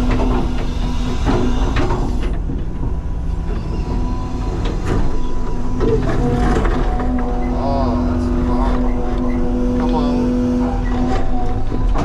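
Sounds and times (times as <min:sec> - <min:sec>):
excavator diesel engine running: 0:00.0 - 0:12.0
steady whine: 0:00.0 - 0:12.0.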